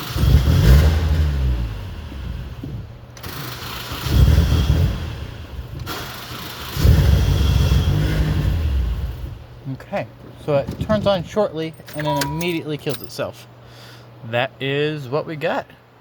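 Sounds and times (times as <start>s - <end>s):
car engine starting and stalling: 0.0s - 9.6s, 10.6s - 13.2s.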